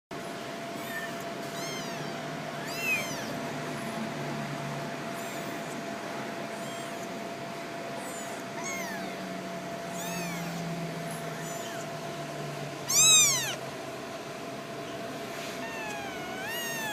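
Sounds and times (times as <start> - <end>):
faint steady hum: 0.2 - 16.9
kittens meowing: 0.8 - 3.5, 6.5 - 7.2, 8.0 - 12.1, 12.8 - 13.6, 15.4 - 16.9.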